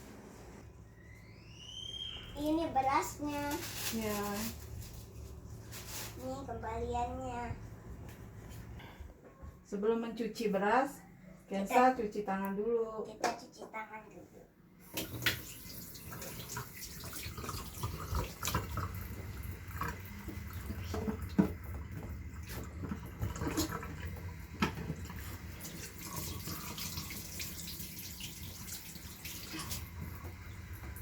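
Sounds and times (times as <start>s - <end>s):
tap water running into sink: 14.8s - 31.0s.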